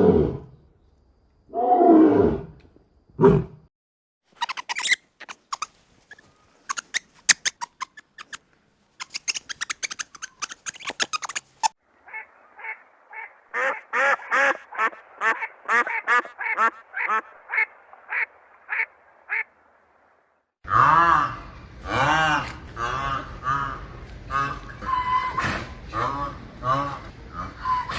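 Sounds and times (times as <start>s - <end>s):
sharp clicks: 6.7s - 8.4s, 9.0s - 11.7s
duck quacking: 13.6s - 17.3s.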